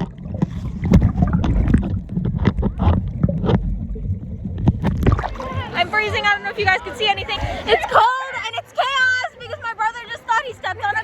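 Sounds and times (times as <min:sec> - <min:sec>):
water splashes: 0:00.0 - 0:08.4
water sloshing and gurgling: 0:00.0 - 0:08.5.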